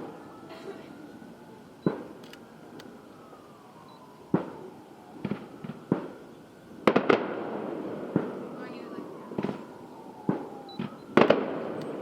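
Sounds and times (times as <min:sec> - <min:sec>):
small fireworks pops: 0:01.8 - 0:03.0, 0:04.3 - 0:06.3, 0:08.1 - 0:12.0
fireworks booms: 0:04.3 - 0:12.0.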